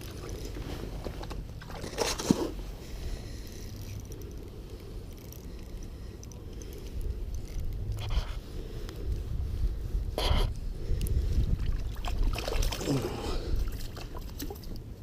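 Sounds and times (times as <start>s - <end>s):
wind buffeting microphone: 6.4s - 15.0s.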